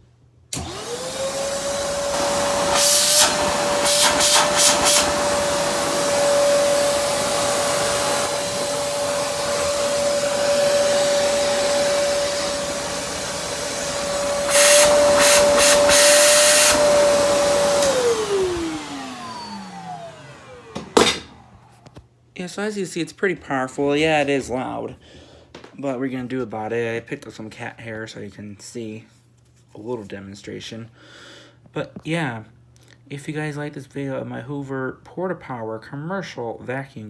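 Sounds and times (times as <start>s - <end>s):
vacuum cleaner motor whine: 0.5s - 22.0s
vacuum hissing rushes: 0.6s - 21.8s.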